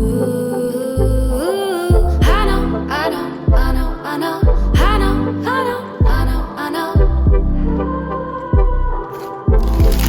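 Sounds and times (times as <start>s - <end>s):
pop song: 0.0s - 10.0s
sustained chords: 0.0s - 10.0s
deep kick drum beat: 1.9s - 2.7s, 3.5s - 5.2s, 6.0s - 6.4s, 7.0s - 7.6s, 8.6s - 10.0s.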